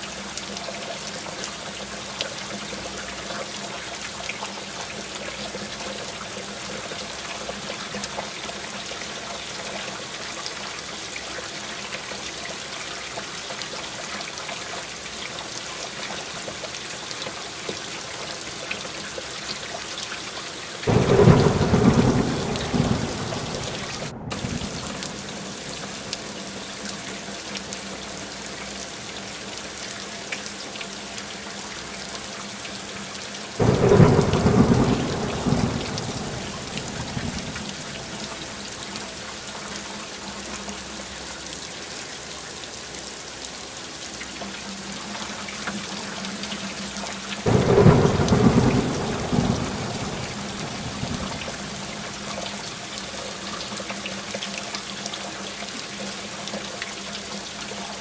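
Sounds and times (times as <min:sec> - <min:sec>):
steady rain falling: 0:00.0 - 0:58.0
thunder rolling: 0:20.9 - 0:25.9, 0:33.6 - 0:38.4, 0:47.5 - 0:52.1.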